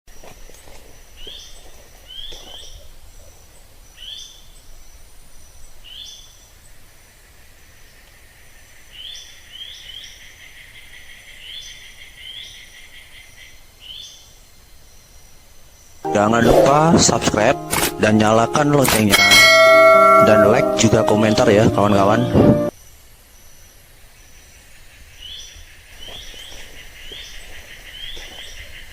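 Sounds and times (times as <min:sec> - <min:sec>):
bird calling high falling notes: 0:16.1 - 0:22.7.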